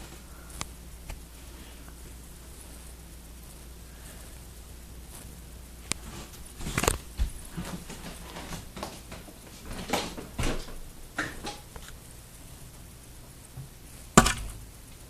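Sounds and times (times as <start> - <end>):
ceiling fan humming: 0.0 - 15.0
knocks and rustles: 5.1 - 12.0, 13.5 - 15.0.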